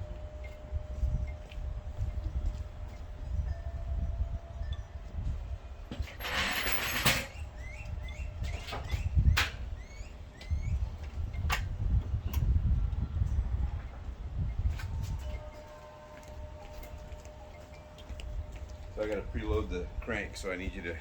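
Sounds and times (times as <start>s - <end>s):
rattling noise: 5.9s - 7.6s
bird chirps: 7.4s - 10.9s.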